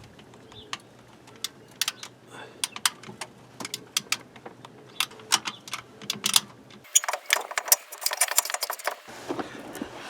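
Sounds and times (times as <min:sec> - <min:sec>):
metallic clicks of hand tools: 0:04.9 - 0:09.1.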